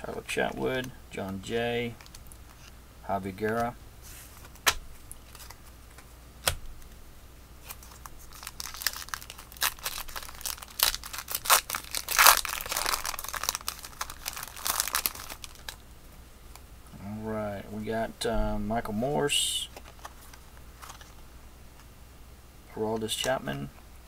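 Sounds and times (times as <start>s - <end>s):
wrapper being torn and crinkled: 7.6s - 15.8s.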